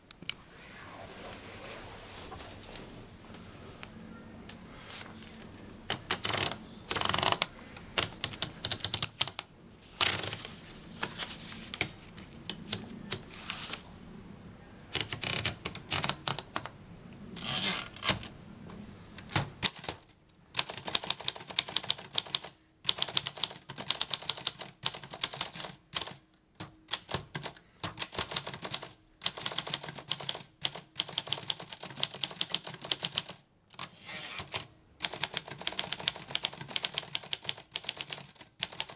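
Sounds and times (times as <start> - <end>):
typewriter key strikes: 26.9 - 38.9.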